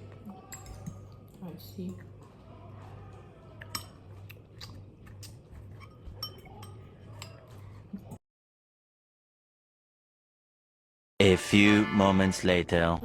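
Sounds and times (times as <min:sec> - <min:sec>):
forks clinking against bowls: 0:00.0 - 0:02.3, 0:03.6 - 0:08.1
eating noises: 0:02.0 - 0:08.2.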